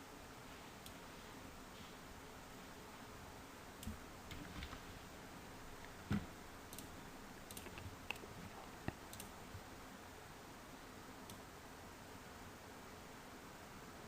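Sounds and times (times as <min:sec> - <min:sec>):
computer mouse clicks: 0:06.7 - 0:06.9, 0:07.5 - 0:09.4.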